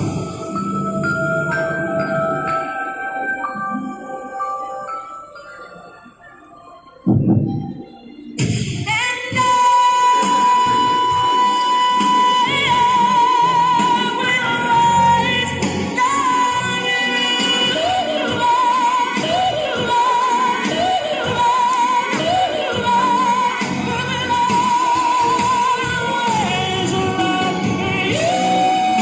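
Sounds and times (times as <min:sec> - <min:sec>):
backing track music: 0:00.0 - 0:29.0
person singing with vibrato: 0:08.8 - 0:29.0.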